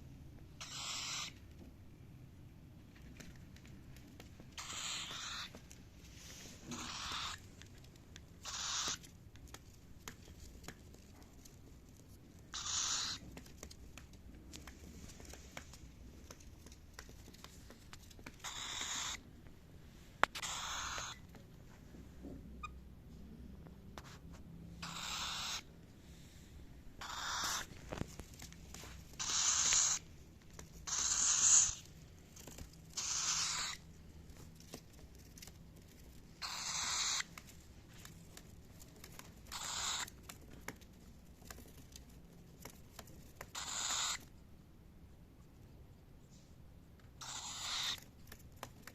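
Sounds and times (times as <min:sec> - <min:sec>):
cockatiel harsh raspy calls: 0:00.6 - 0:01.4, 0:04.6 - 0:05.6, 0:06.6 - 0:07.5, 0:08.4 - 0:09.1, 0:12.5 - 0:13.3, 0:18.4 - 0:19.2, 0:20.3 - 0:21.4, 0:24.8 - 0:25.7, 0:27.0 - 0:27.8, 0:29.2 - 0:30.1, 0:30.8 - 0:31.9, 0:32.9 - 0:33.8, 0:36.3 - 0:37.4, 0:39.5 - 0:40.3, 0:43.5 - 0:44.3, 0:47.2 - 0:48.1.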